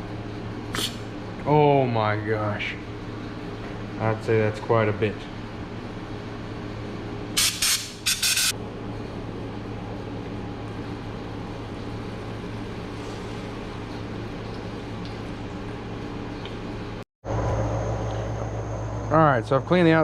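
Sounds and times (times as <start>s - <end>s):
background hum: 0.0s - 20.0s
short hissing blasts: 0.7s - 1.0s, 7.4s - 8.5s.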